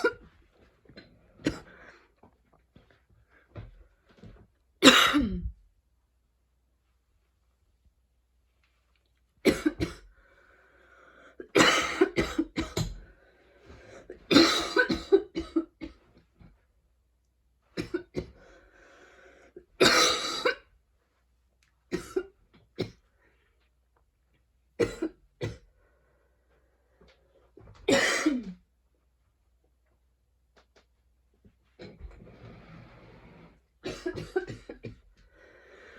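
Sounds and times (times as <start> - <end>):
woman coughing: 0.0 - 0.2, 4.8 - 5.5, 9.5 - 10.0, 11.5 - 13.0, 14.3 - 16.0, 19.8 - 20.6, 21.9 - 23.0, 24.8 - 25.6, 27.9 - 28.6, 33.8 - 35.0
wheezy breaths: 10.1 - 11.5, 18.3 - 19.7, 35.2 - 35.9.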